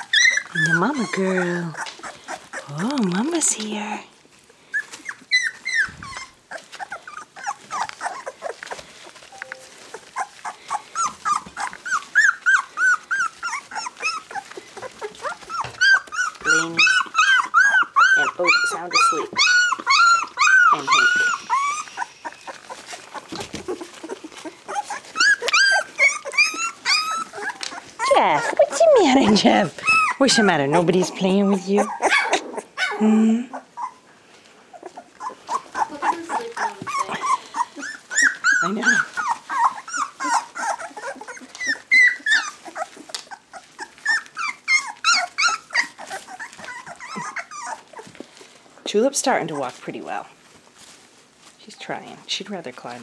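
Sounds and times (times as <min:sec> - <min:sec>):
puppies squealing and whining: 0:00.0 - 0:51.5
soft scuffling: 0:00.3 - 0:32.1, 0:34.3 - 0:52.2.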